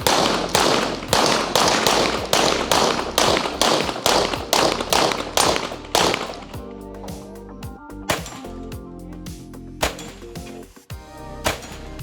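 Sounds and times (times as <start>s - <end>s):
rapid gunshots: 0.0s - 6.6s.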